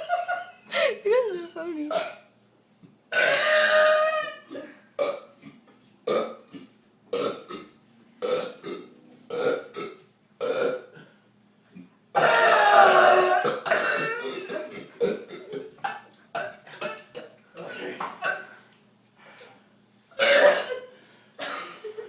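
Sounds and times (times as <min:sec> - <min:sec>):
people burping: 0:03.1 - 0:11.2, 0:12.2 - 0:18.6, 0:20.2 - 0:21.8.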